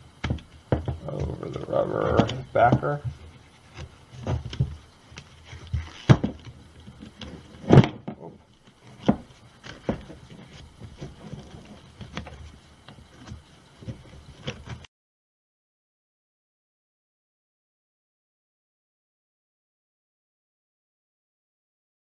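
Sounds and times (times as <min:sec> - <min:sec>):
handling knocks and rubbing: 0:00.0 - 0:14.9.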